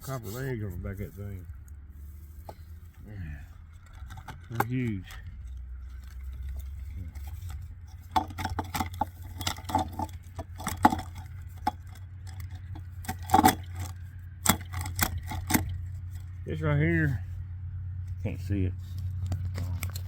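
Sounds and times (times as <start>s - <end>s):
steady low hum: 0.0s - 20.0s
metal parts clinking and clattering: 3.6s - 16.4s.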